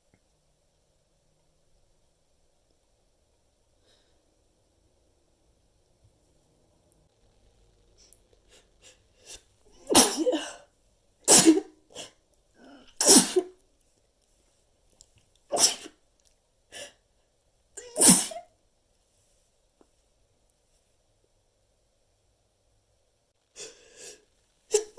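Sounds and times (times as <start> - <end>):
person stifling sneezes: 8.5 - 10.6, 11.3 - 13.5, 15.5 - 15.9, 17.8 - 18.5, 23.6 - 24.9.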